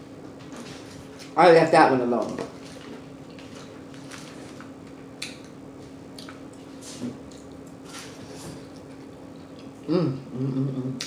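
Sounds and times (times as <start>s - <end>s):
chewing soft food: 2.8s - 9.9s.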